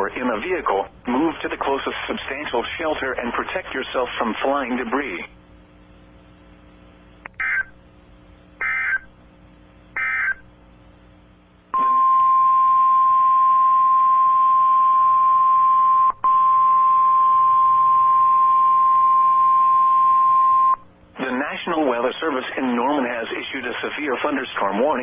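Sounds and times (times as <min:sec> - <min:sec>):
steady attention tone: 0:11.7 - 0:22.0.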